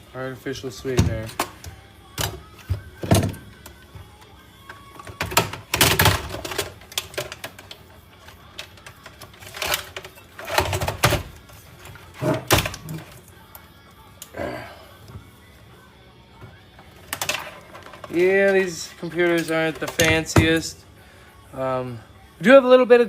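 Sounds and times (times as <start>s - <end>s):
metal computer parts clanking: 5.0s - 13.2s, 17.0s - 20.8s.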